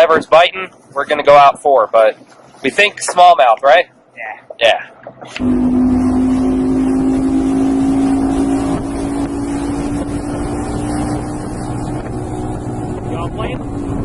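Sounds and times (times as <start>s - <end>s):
hull rushing through water: 4.9s - 14.0s
outboard motor droning: 5.0s - 14.0s.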